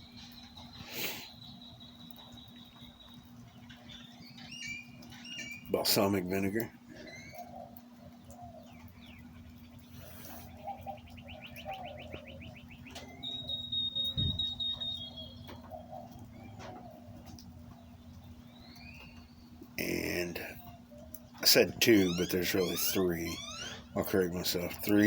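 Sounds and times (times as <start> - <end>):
bird trill: 0.0 - 6.1, 6.9 - 17.0, 17.8 - 25.0
birds chirping: 0.0 - 25.0
steady low hum: 0.0 - 25.0
bird whistle: 10.6 - 15.8.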